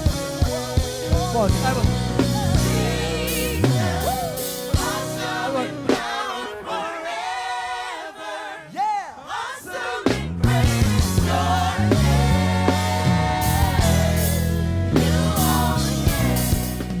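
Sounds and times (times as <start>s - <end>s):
band with bass and drums: 0.0s - 6.4s, 10.0s - 17.0s
singers holding long notes: 0.0s - 17.0s.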